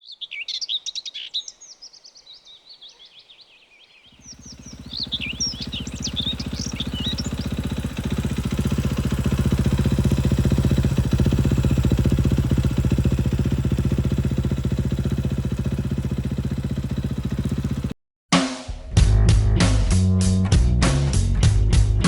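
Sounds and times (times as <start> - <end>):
motorcycle engine idling: 4.1 - 18.0.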